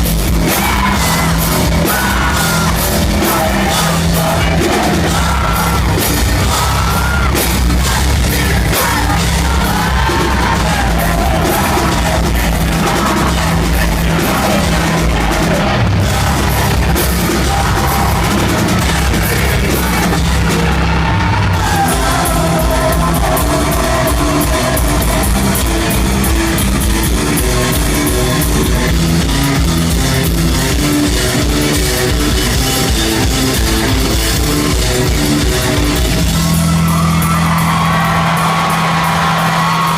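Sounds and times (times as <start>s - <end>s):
live rock band playing: 0.0s - 39.9s
person singing and yelling: 0.4s - 27.2s.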